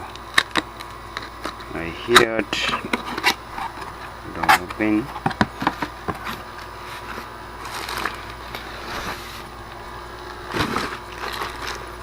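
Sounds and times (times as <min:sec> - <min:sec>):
packaging crinkling and scraping: 0:05.5 - 0:09.7, 0:10.3 - 0:12.0
rustling bump: 0:10.4 - 0:11.8.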